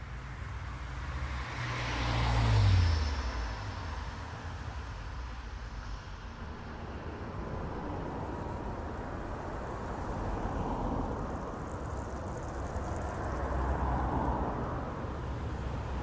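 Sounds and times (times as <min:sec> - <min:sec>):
road traffic noise: 0:00.0 - 0:16.0
car passing: 0:01.2 - 0:03.6, 0:09.8 - 0:16.0.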